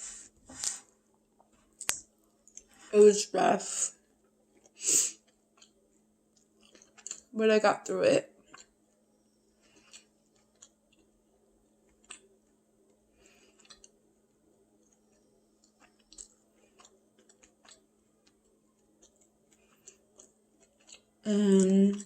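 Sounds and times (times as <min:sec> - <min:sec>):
faint steady hum: 0:00.0 - 0:22.0
chewing and mouth clicks: 0:04.5 - 0:07.3, 0:08.4 - 0:08.8, 0:09.6 - 0:11.2, 0:11.8 - 0:12.3, 0:12.9 - 0:14.0, 0:14.8 - 0:22.0.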